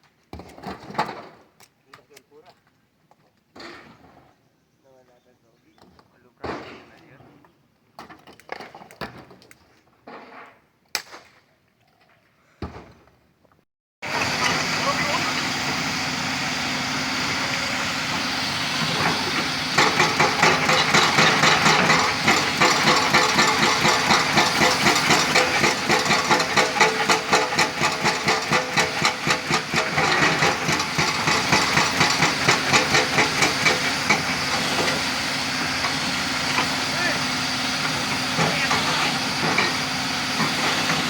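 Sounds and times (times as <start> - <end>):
excavator engine hum: 14.0 - 41.0.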